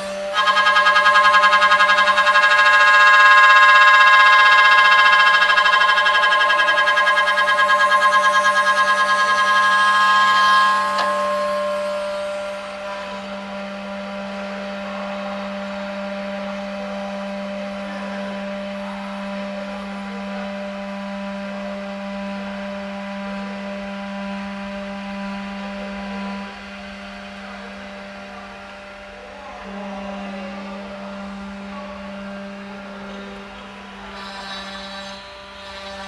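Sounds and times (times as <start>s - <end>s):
drilling machine motors whirring: 0.0s - 16.0s, 25.5s - 36.0s.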